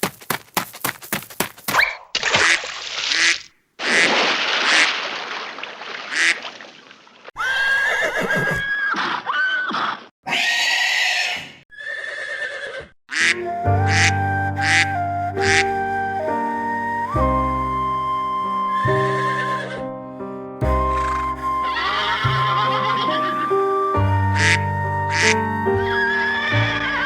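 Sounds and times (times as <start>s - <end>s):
horse whinnies: 7.4s - 12.9s, 21.0s - 23.6s
recorded animal calls: 7.4s - 15.7s, 20.9s - 27.0s
woodwind tune: 13.2s - 27.0s.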